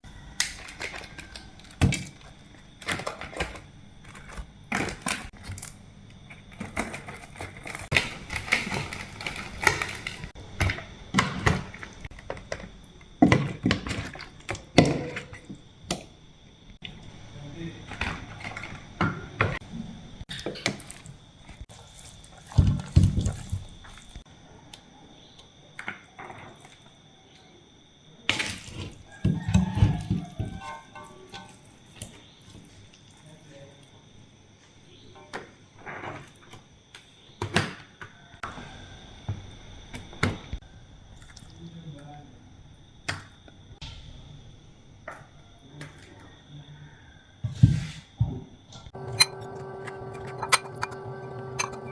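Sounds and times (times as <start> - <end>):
sharp clicks and knocks: 48.9 - 51.9.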